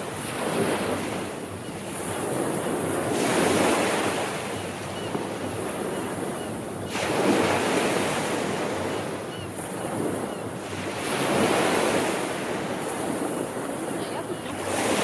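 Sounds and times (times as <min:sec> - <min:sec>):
sea waves washing ashore: 0:00.0 - 0:15.0.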